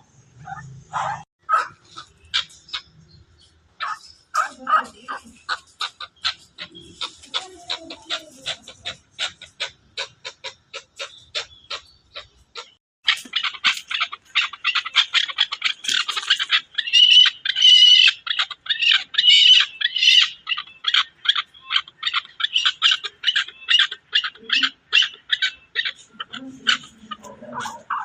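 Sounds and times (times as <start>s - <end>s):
partridge clucking call: 0.5s - 3.0s, 3.8s - 28.0s.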